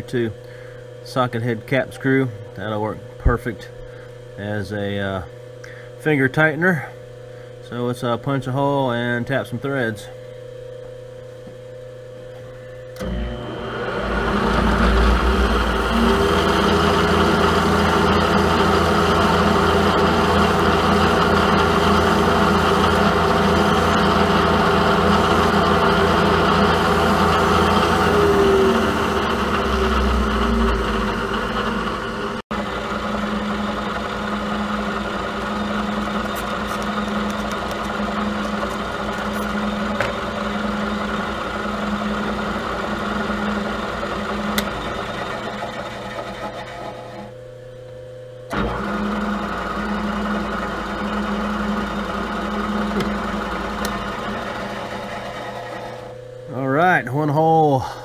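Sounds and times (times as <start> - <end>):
milling machine motor hum: 10.0 - 58.0
pulsing machine drone: 12.5 - 47.4, 48.5 - 58.0.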